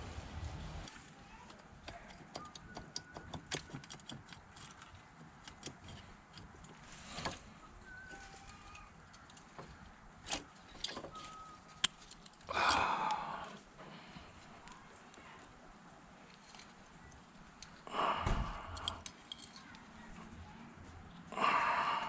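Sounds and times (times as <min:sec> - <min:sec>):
metallic clicks and taps: 0:18.7 - 0:19.8.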